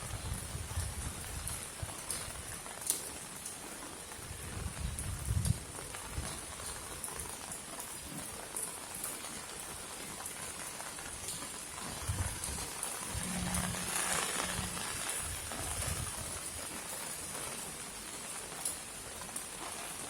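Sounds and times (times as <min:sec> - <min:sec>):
rain falling: 0:00.0 - 0:20.0
water drips ticking: 0:00.3 - 0:04.2, 0:05.0 - 0:20.0
low hum: 0:13.0 - 0:15.8
low thumps: 0:13.1 - 0:15.3.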